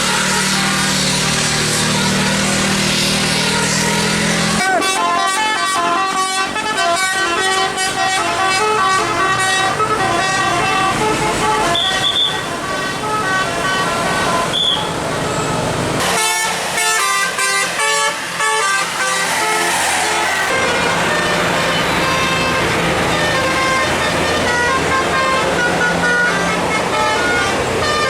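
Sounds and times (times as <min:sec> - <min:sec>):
bus musical air horn: 0:00.0 - 0:28.0.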